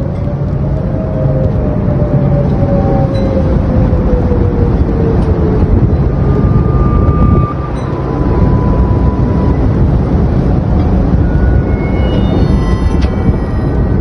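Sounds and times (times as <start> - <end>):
strong storm wind roar: 0.0 - 14.0.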